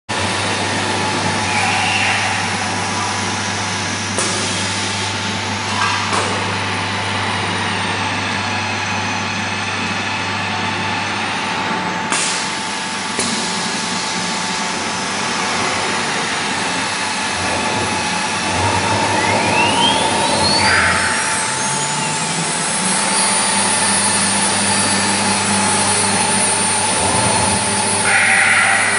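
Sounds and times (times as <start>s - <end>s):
milling machine running: 0.1s - 28.9s
low hum: 14.6s - 28.9s.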